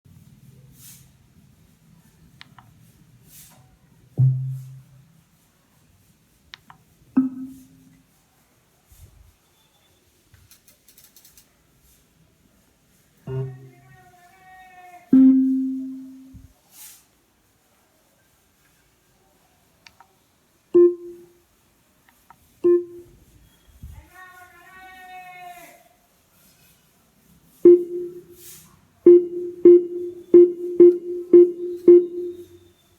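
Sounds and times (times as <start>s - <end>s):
plucked musical note: 4.2s - 4.8s, 7.2s - 7.8s, 13.3s - 13.7s, 15.2s - 16.4s
loud percussive hits with ringing: 4.2s - 5.0s
faint clicks: 10.3s - 11.6s.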